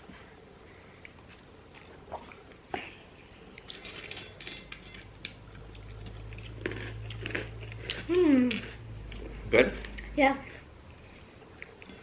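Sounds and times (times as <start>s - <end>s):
chewing and biting: 5.5s - 10.1s.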